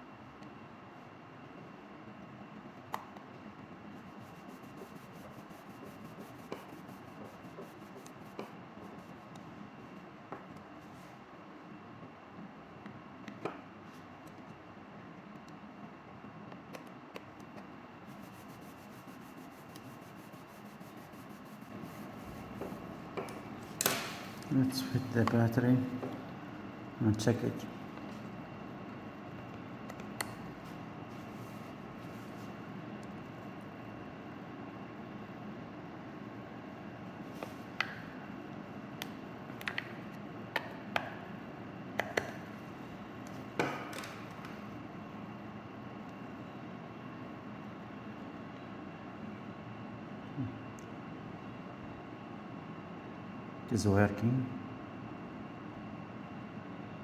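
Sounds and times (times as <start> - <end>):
plastic clicks and taps: 39.0 - 41.2.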